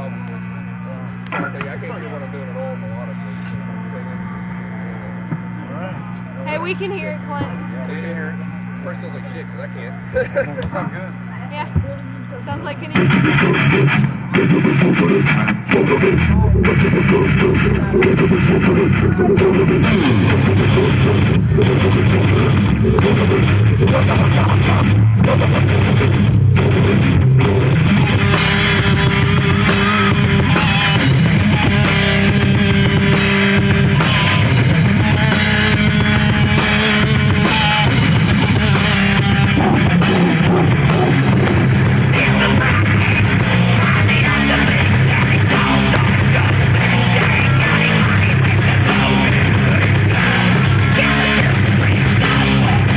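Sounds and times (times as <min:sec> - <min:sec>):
heavy metal band playing live: 0:12.9 - 0:52.9.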